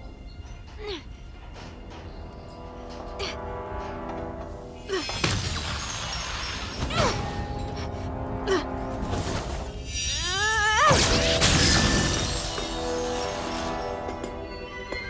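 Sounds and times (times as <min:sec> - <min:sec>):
film soundtrack music: 0:00.0 - 0:15.0.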